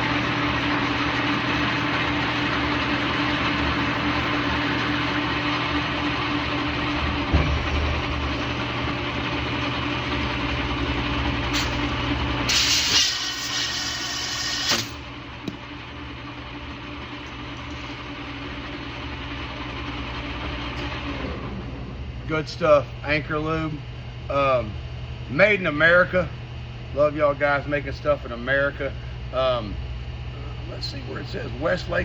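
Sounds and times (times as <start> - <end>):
lathe motor hum: 0.0 - 23.2
loud hiss: 12.5 - 15.0.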